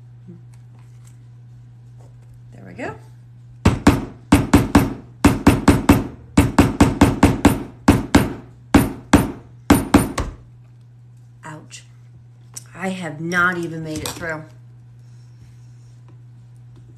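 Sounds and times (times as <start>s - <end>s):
hammer striking metal punch: 3.7s - 10.4s.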